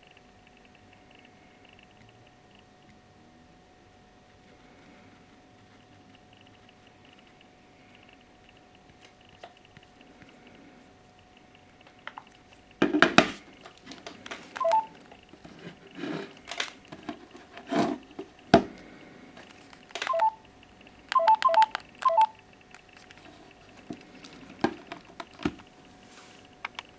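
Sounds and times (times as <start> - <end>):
phone keypad beeps: 14.6 - 15.0, 20.0 - 20.5, 21.1 - 22.4.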